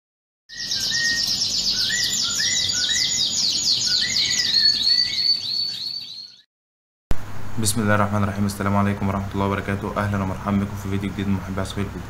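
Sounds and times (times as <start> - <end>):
high bird chirps: 0.5 - 6.5
lower whistled bird notes: 0.5 - 6.5.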